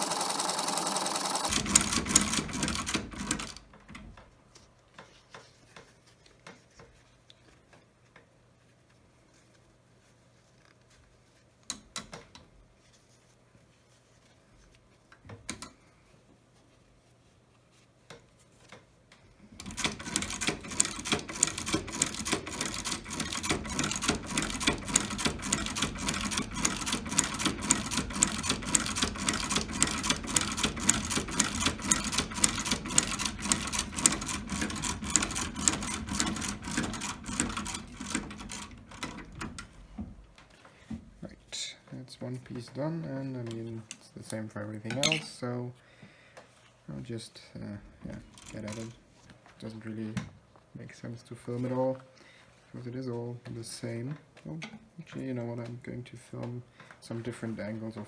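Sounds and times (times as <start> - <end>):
sewing machine stitching: 0.0 - 3.7, 19.6 - 39.8, 48.3 - 49.0.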